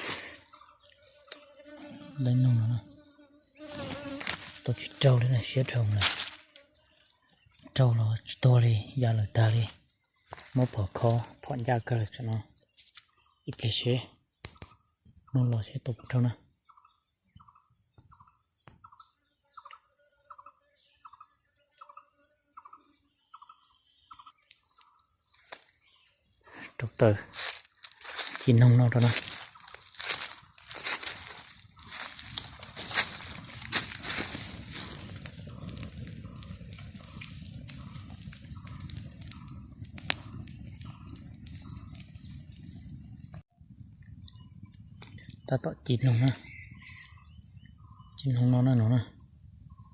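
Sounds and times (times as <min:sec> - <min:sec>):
high insect buzz: 0:00.0 - 0:10.5, 0:16.7 - 0:26.6, 0:27.3 - 0:49.9
steady high-pitched hiss: 0:00.0 - 0:14.1, 0:25.8 - 0:49.9
cricket trill: 0:00.0 - 0:49.9.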